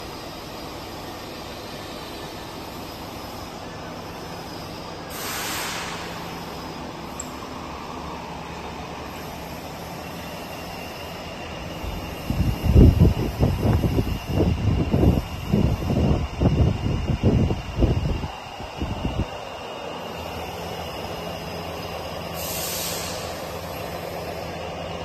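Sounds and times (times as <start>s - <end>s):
workshop machinery humming: 0.0s - 25.0s
short hiss: 5.1s - 6.5s, 22.4s - 23.5s.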